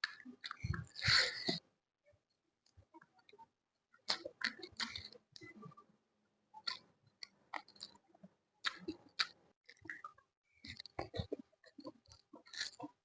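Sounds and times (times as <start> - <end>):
chewing crunchy food: 6.6 - 8.0, 8.6 - 13.0.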